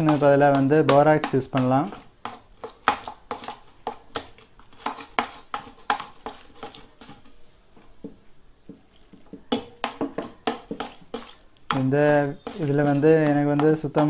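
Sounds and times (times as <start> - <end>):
slime stirred in bowl: 0.0 - 14.0.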